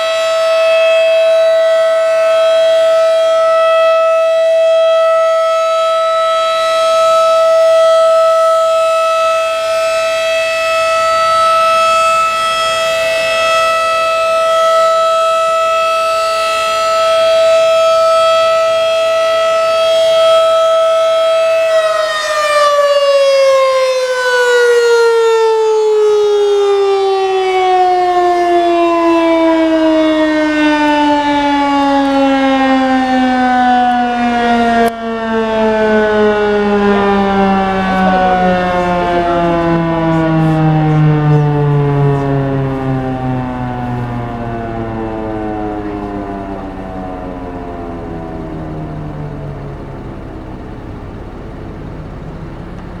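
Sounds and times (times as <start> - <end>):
warning siren steady tone: 0.0 - 53.0.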